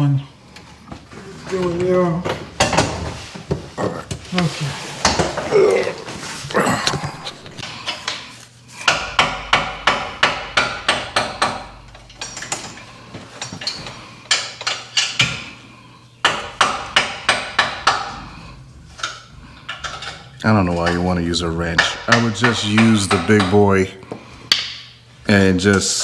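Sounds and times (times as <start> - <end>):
hammer striking metal: 8.8 - 12.5.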